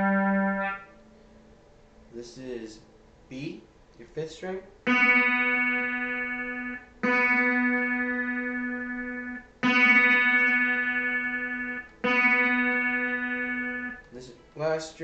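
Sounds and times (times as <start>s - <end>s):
guitar string plucked: 4.9s - 14.3s.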